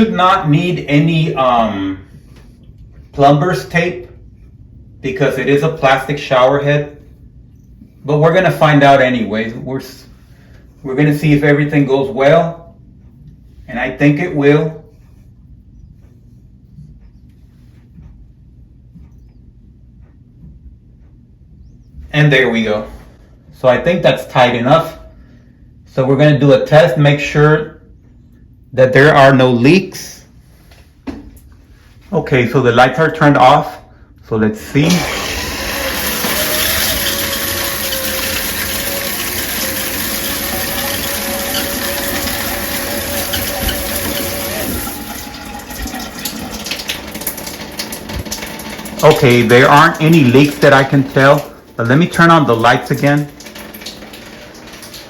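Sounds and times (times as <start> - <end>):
water spraying from shower head: 34.9 - 55.0.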